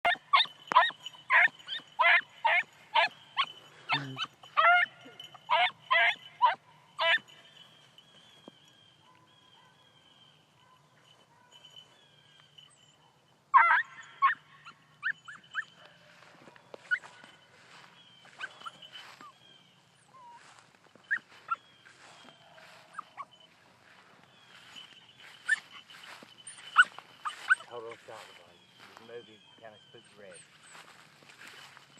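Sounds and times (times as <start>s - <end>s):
puppy yelping: 0.1s - 7.2s, 13.5s - 15.8s, 21.0s - 21.6s, 25.3s - 27.7s.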